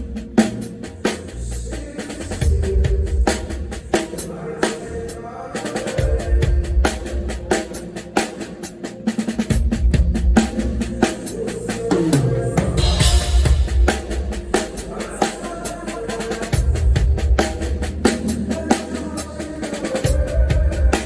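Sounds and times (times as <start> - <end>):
low bass notes: 0.0 - 4.1, 9.7 - 18.7
drum kit groove: 0.0 - 21.0
cymbal crash: 12.2 - 14.9.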